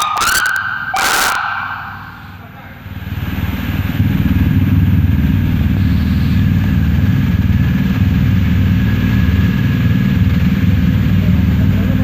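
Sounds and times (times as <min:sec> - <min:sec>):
faint steady whine: 0:00.0 - 0:01.4.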